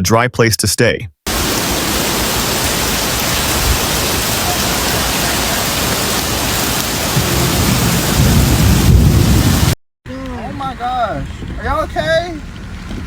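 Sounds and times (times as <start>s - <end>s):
heavy rain pouring: 1.3s - 9.8s.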